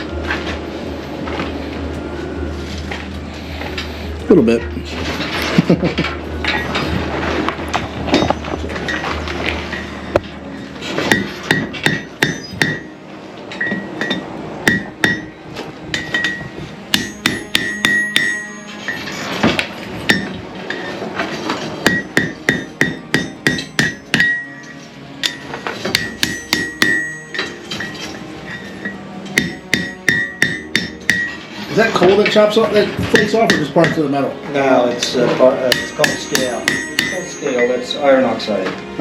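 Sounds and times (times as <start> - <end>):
hammer striking iron on anvil: 11.0 - 13.0, 13.6 - 20.9, 21.8 - 31.4, 33.0 - 34.2, 35.6 - 37.9.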